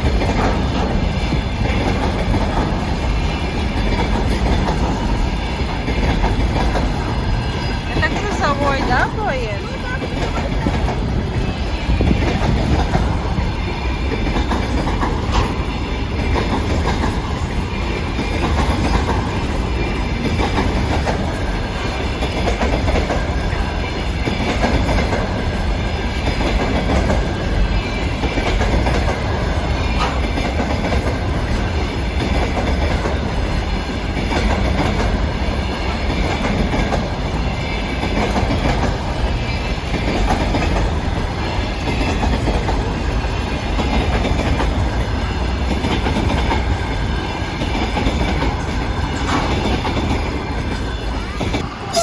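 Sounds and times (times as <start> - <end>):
freight train rumbling past: 0.0 - 52.0
wheels clacking over rail joints: 0.0 - 52.0.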